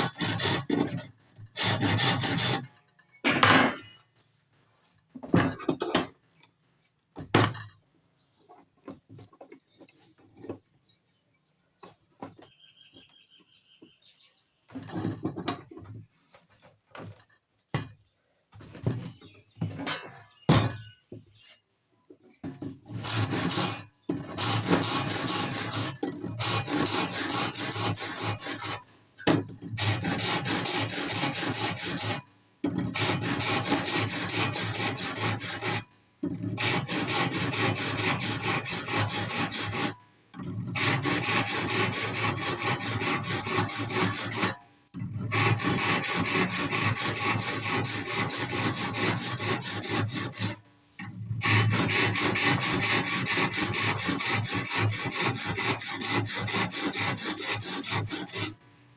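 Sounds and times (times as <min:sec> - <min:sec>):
hand tool scraping wood: 0:00.0 - 0:02.8, 0:14.7 - 0:17.2, 0:22.4 - 0:58.6
knocks and clicks of tools and wood: 0:00.3 - 0:04.2, 0:05.0 - 0:10.8, 0:14.7 - 0:21.4, 0:29.2 - 0:30.0.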